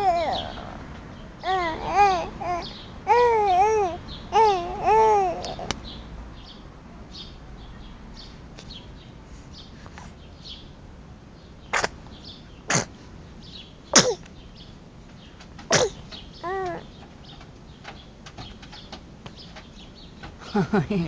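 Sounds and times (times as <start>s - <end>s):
baby sneezing: 11.7s - 12.0s, 12.7s - 12.9s, 14.0s - 14.2s, 15.7s - 16.0s.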